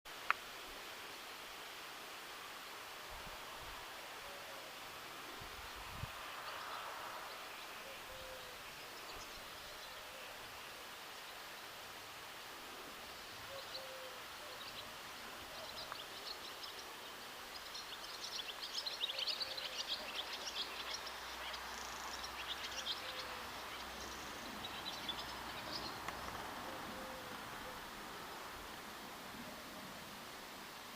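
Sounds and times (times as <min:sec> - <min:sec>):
faint background noise: 0:00.1 - 0:30.9
small birds chirping: 0:13.1 - 0:26.4.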